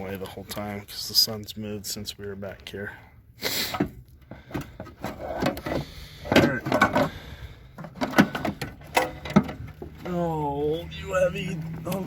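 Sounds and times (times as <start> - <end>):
metal clunks and scrapes: 3.6 - 10.1.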